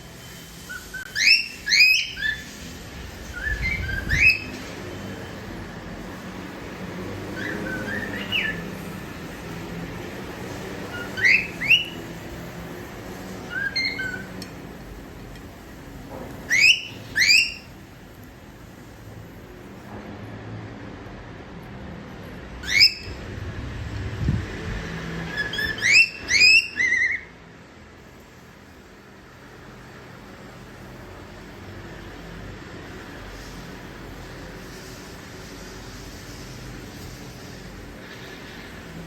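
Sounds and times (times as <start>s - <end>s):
cockatiel whistling: 0.7s - 2.6s, 3.3s - 4.6s, 7.3s - 8.7s, 10.9s - 12.1s, 13.5s - 14.4s, 16.5s - 17.7s, 22.6s - 23.2s, 25.3s - 27.3s.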